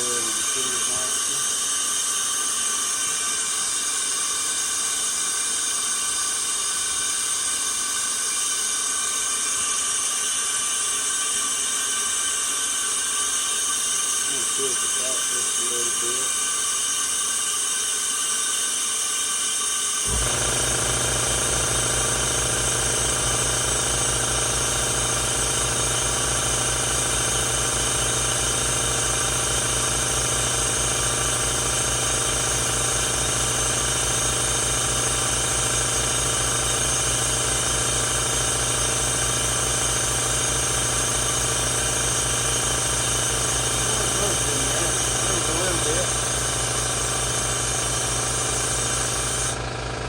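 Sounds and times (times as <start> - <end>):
air compressor running: 0.0 - 50.0
compressed air hissing: 20.1 - 33.1, 41.0 - 49.6.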